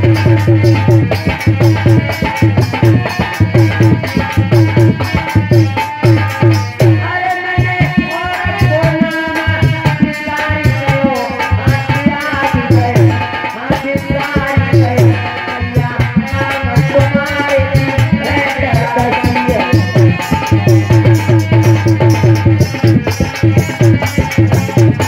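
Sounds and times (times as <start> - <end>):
hand drum beating: 0.0 - 25.0
jingling rattle percussion: 16.3 - 25.0.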